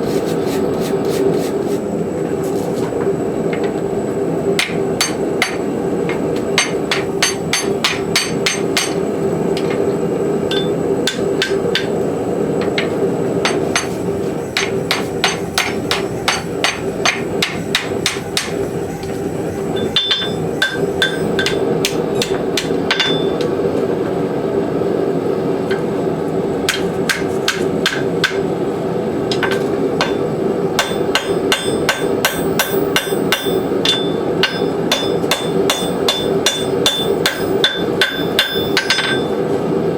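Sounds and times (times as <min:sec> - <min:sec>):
steady hum: 0:00.0 - 0:39.9
hammer striking steel on anvil: 0:04.6 - 0:09.0, 0:10.5 - 0:12.0, 0:12.6 - 0:19.1, 0:19.8 - 0:23.5, 0:26.7 - 0:28.5, 0:29.3 - 0:39.4.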